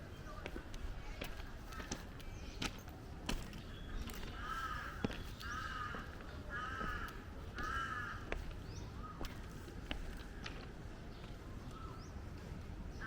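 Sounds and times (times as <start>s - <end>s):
faint street noise: 0.0s - 13.0s
crow cawing: 4.3s - 8.4s.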